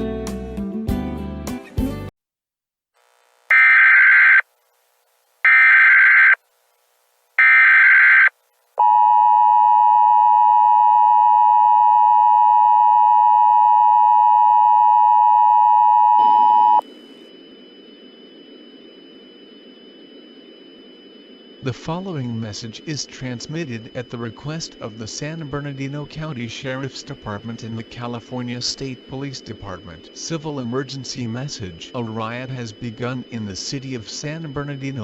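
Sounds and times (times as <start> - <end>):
faint low hiss: 3.0 - 8.8
screeching digital data bursts: 3.5 - 4.4, 5.5 - 6.4, 7.4 - 8.3, 21.6 - 35.0
two-tone attention signal: 3.5 - 4.4.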